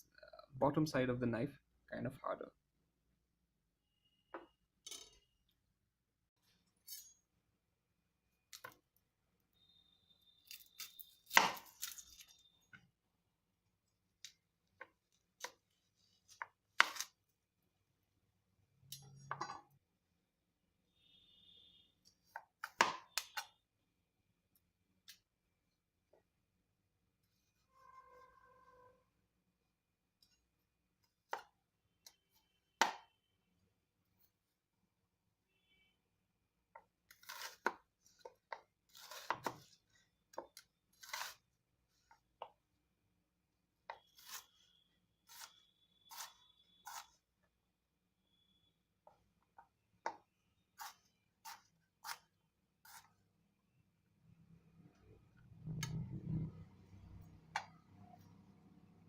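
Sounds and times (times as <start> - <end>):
knife cutting onion on board: 16.3 - 17.2, 37.1 - 41.5, 43.8 - 47.2, 50.0 - 53.2.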